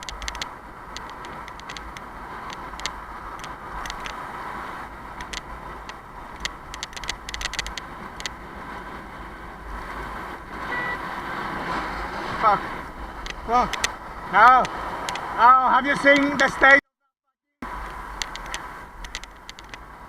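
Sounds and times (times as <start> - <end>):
bicycle clicks and rattles: 0.0 - 4.2, 5.1 - 8.4, 13.2 - 14.0, 17.8 - 19.9
motor vehicles rushing past: 0.0 - 16.8
road and wind noise: 0.0 - 16.8, 17.6 - 20.0.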